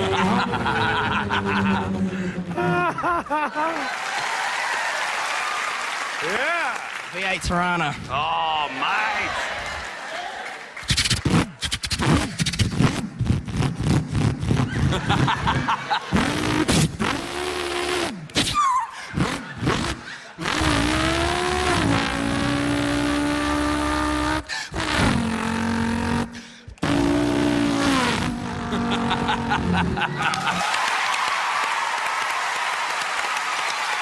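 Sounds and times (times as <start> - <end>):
man imitating engine revving: 16.1 - 18.3, 19.1 - 30.5.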